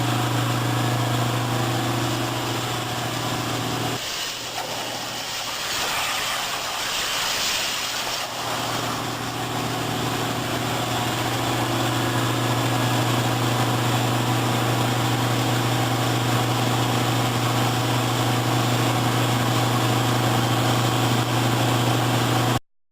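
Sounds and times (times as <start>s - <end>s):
low hum: 0.0s - 16.0s
plasma cutter hissing: 3.8s - 11.2s.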